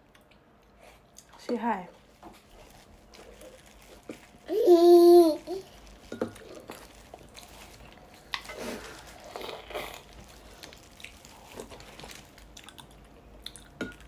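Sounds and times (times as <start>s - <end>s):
chewing and biting food: 5.6s - 14.0s.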